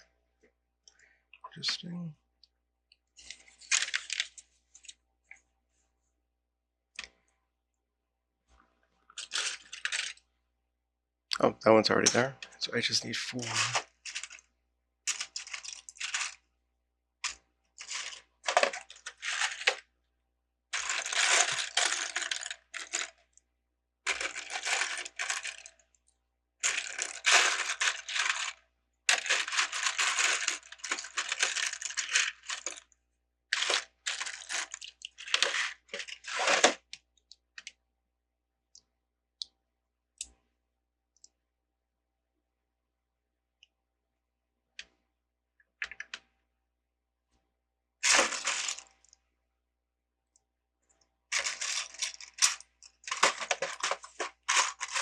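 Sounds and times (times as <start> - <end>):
plastic bricks rattling: 13.4 - 14.4, 17.2 - 19.8, 20.8 - 23.2, 24.1 - 25.8, 26.6 - 32.9, 33.6 - 36.9, 48.0 - 48.8, 51.3 - 55.0.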